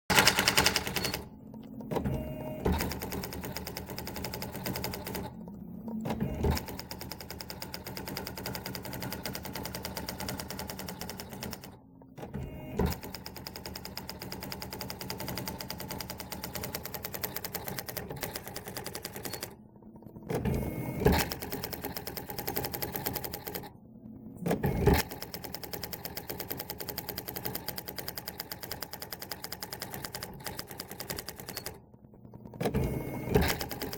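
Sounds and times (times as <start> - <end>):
typewriter print strikes: 0.1 - 1.3.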